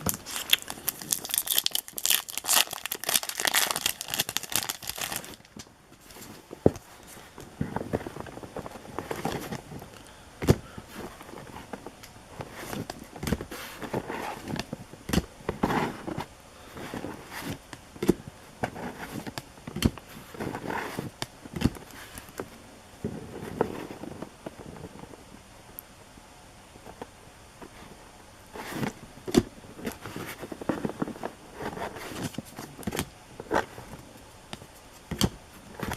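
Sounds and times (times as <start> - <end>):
foil wrappers rustling: 0.0 - 6.4.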